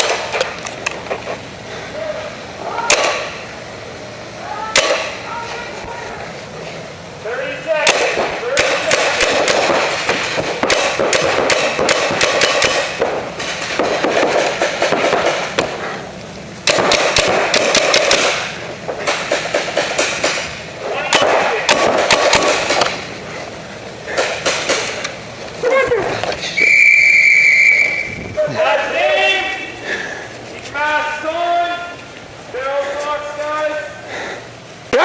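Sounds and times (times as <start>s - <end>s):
paintball markers firing: 7.8s - 15.7s, 16.6s - 20.5s, 21.1s - 23.0s
whistle blowing: 26.5s - 28.3s.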